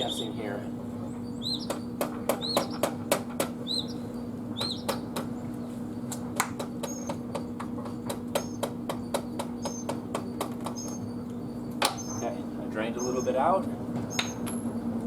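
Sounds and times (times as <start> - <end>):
steady low hum: 0.0 - 15.0
bird chirping: 1.0 - 3.0, 3.6 - 5.8, 6.6 - 15.0
hand tools clicking and tapping: 1.7 - 3.6, 4.6 - 5.3, 6.1 - 11.0.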